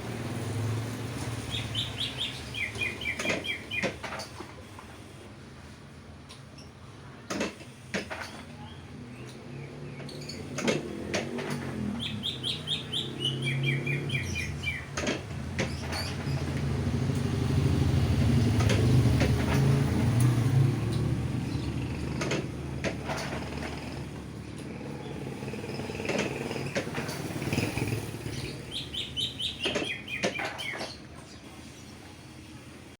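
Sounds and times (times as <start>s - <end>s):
canary chirping: 1.4s - 4.0s, 12.0s - 15.0s, 27.5s - 31.0s
low engine hum: 8.6s - 32.9s.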